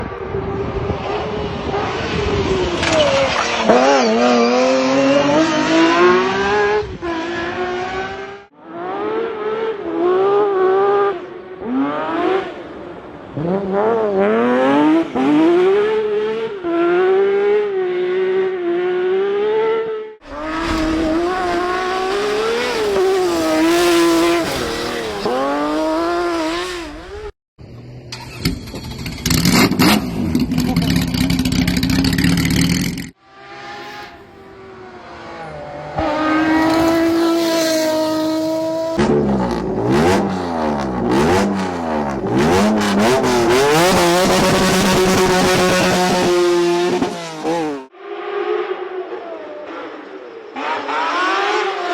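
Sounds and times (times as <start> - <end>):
car engine revving hard: 0.4 - 17.6, 20.2 - 27.4, 33.3 - 47.9, 50.6 - 51.9.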